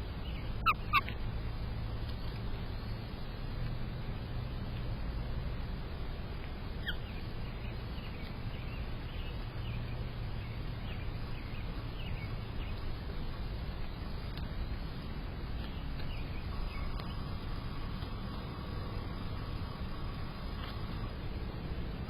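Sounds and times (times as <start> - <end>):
low background rumble: 0.0 - 22.0
faint bird chirps: 6.8 - 15.0, 15.6 - 21.1.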